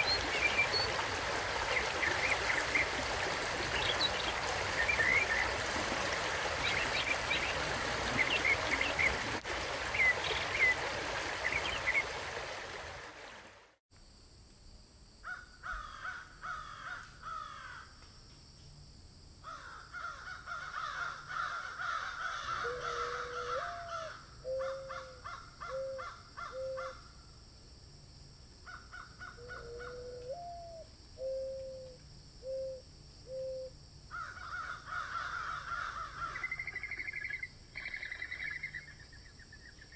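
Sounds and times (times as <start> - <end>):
bird low rising calls: 0.0 - 12.2
small birds chirping: 0.0 - 12.2, 36.2 - 39.9
mountain stream running: 0.0 - 13.8.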